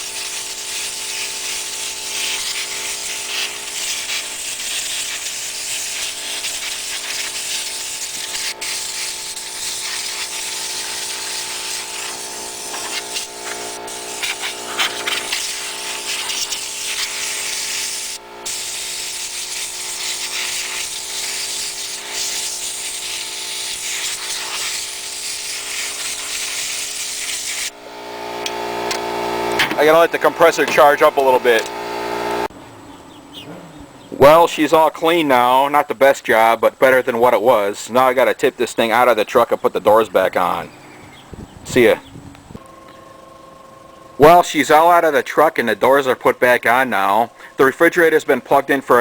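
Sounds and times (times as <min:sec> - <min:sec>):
compressed air hissing: 0:00.0 - 0:27.8
air compressor running: 0:00.0 - 0:32.5, 0:46.9 - 0:47.9.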